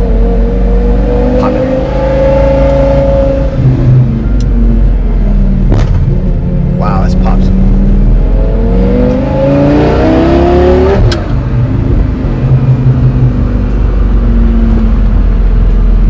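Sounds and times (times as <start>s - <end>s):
car engine revving: 0.0s - 16.0s
exhaust crack: 5.4s - 8.2s
exhaust popping: 5.5s - 7.4s.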